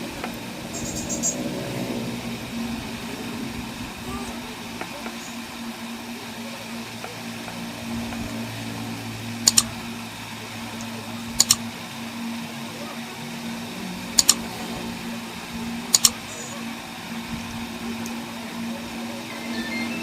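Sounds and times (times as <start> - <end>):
car air conditioning hum: 0.0 - 20.0
sharp double clicks: 9.4 - 9.7, 11.4 - 11.6, 14.2 - 14.5, 15.9 - 16.2.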